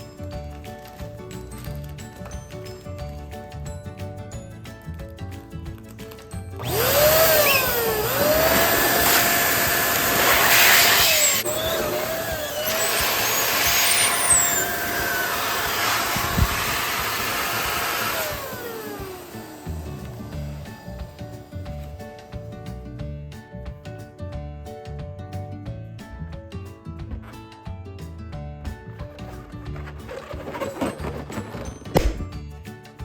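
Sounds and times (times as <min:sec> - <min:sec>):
light background music: 0:00.0 - 0:33.0
balloon inflator motor whining: 0:06.6 - 0:21.5, 0:29.2 - 0:32.3.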